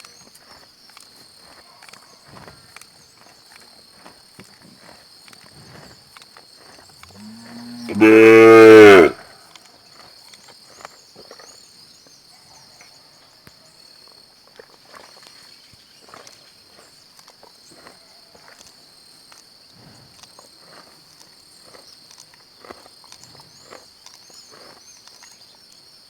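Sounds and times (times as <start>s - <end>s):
cow chewing clicks: 0.6s - 8.9s
calf mooing: 7.1s - 9.3s.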